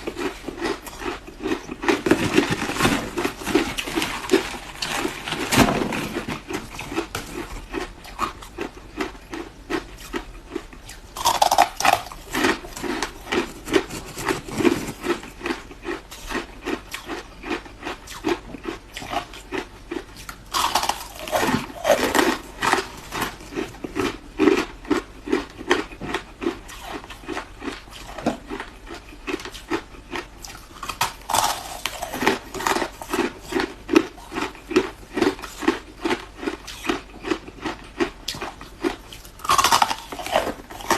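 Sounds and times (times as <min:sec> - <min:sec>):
ice being chewed: 0:00.0 - 0:40.9.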